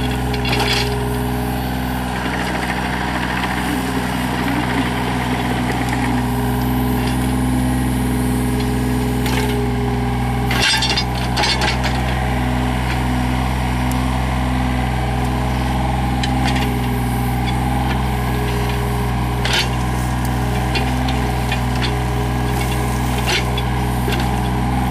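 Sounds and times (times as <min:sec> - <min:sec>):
diesel engine running: 0:00.0 - 0:24.9
metallic clanks and knocks: 0:00.1 - 0:01.0, 0:20.5 - 0:24.5.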